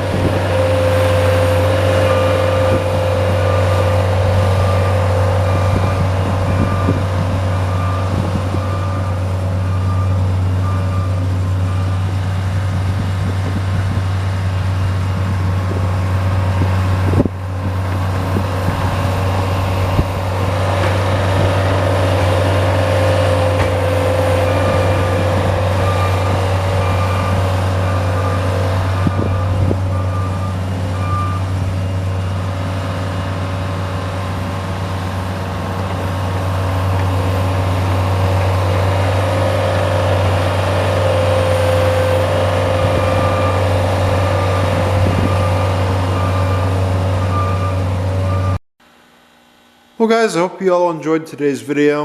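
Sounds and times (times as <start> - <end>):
diesel engine running: 0.0 - 50.0.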